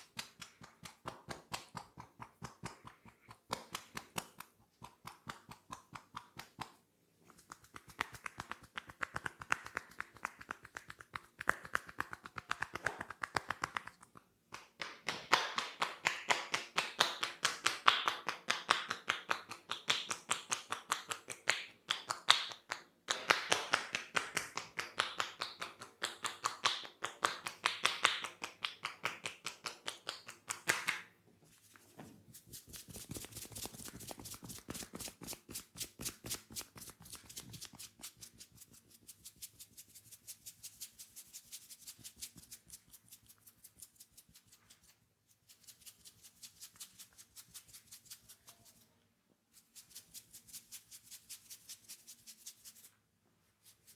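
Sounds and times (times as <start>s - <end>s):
hands tapping on head: 0.0s - 31.0s.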